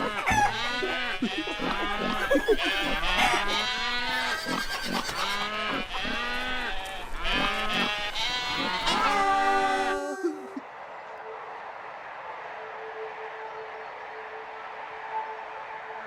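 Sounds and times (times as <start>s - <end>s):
people imitating sheep bleats: 0.0s - 10.6s.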